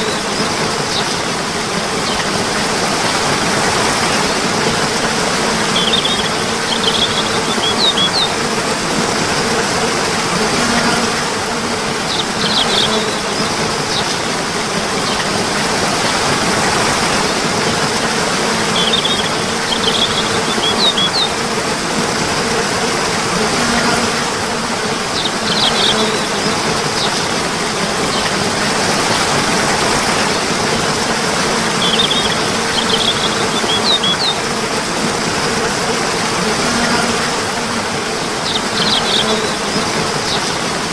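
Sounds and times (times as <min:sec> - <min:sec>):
running water rushing: 0:00.0 - 0:40.9
high bird chirps: 0:05.7 - 0:08.4, 0:12.1 - 0:13.2, 0:18.7 - 0:21.3, 0:31.8 - 0:34.4, 0:38.5 - 0:39.5.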